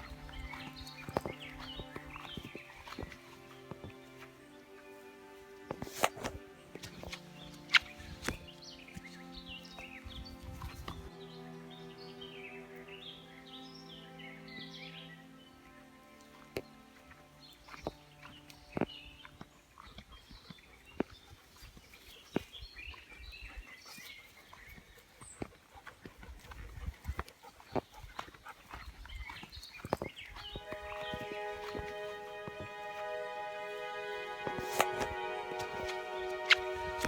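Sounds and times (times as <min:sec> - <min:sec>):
small birds chirping: 0:00.0 - 0:05.0, 0:05.8 - 0:32.7
background music sustained tones: 0:00.0 - 0:21.0, 0:30.1 - 0:37.0.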